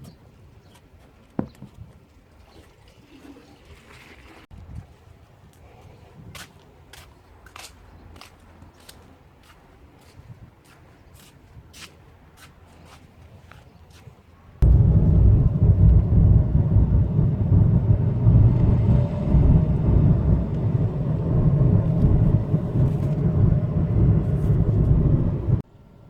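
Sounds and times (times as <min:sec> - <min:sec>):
car engine and road noise: 0:14.6 - 0:25.7.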